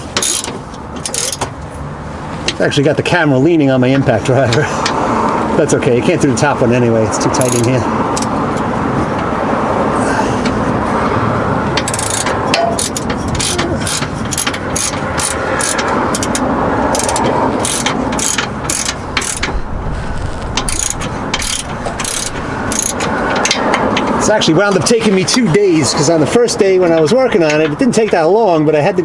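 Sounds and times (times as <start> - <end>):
ratchet wrench clicking: 0.2 - 1.5, 7.4 - 9.3, 11.8 - 19.6, 20.2 - 24.2.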